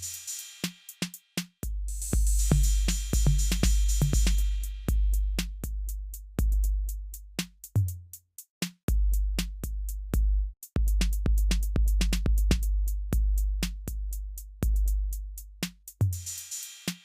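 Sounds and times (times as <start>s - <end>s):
electronic music with drum beat: 0.0s - 10.0s.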